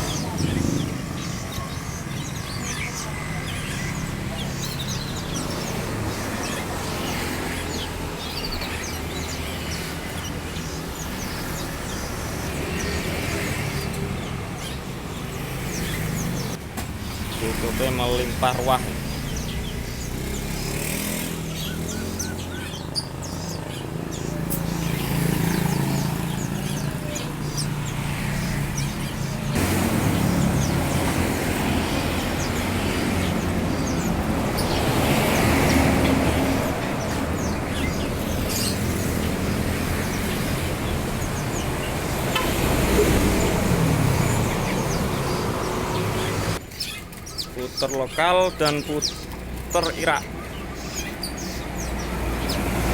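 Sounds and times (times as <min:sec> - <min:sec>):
birds chirping: 0:00.0 - 0:52.9
road traffic rumble: 0:00.0 - 0:52.9.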